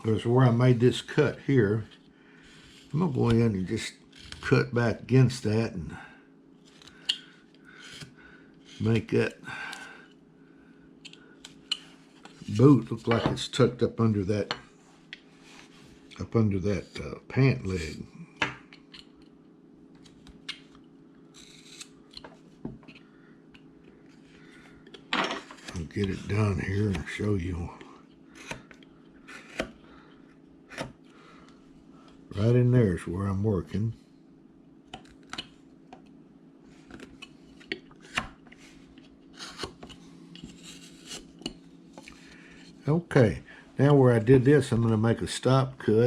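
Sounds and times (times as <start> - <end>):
faint steady hum: 0.0 - 46.0
knife scraping slice in wood: 21.4 - 21.9, 39.3 - 41.5.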